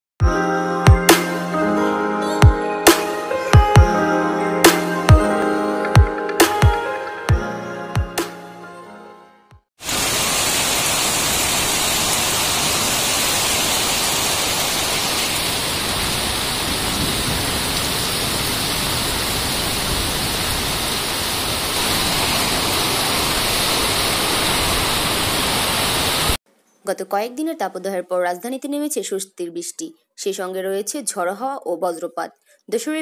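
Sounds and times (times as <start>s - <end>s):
heavy rain pouring: 9.8s - 26.4s.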